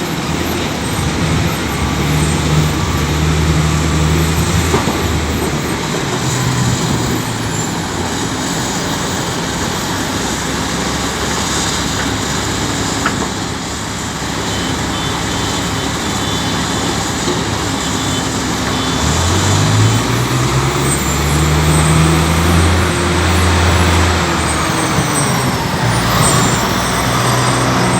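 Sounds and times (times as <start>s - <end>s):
heavy diesel engines running: 0.0s - 27.9s
engine revving up: 0.2s - 9.8s, 17.8s - 27.9s.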